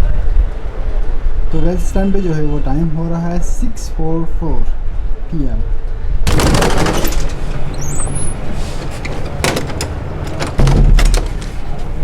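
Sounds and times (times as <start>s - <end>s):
busy street traffic: 0.0s - 3.0s, 5.8s - 12.0s
sharp clatters: 6.3s - 11.9s.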